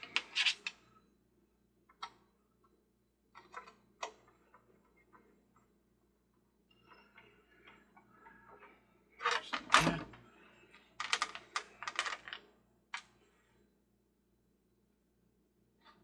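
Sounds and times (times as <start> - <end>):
small parts clicking and tapping: 10.7 - 13.2.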